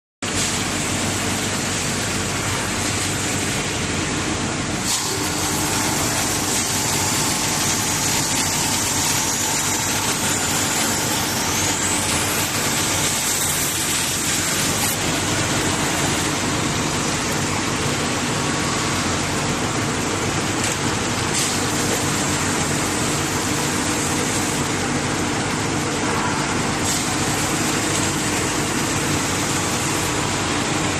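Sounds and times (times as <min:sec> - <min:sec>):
sharpening machine hissing: 0:04.8 - 0:15.1.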